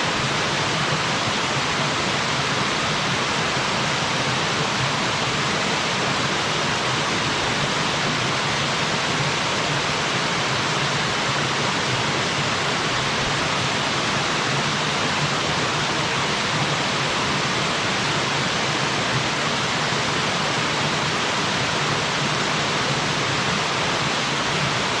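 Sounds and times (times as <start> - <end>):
waterfall splashing into pool: 0.0 - 25.0.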